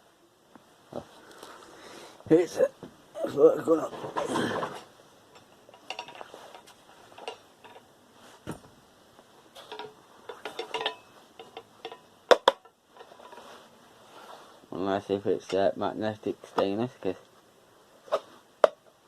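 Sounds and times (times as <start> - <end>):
small metal parts clinking: 5.4 - 7.9, 9.6 - 13.5.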